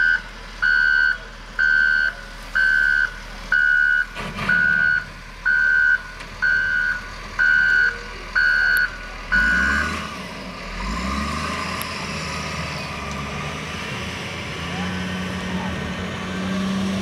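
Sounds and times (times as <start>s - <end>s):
reversing alarm beeping: 0.0s - 9.8s
tractor engine revving: 0.0s - 17.0s.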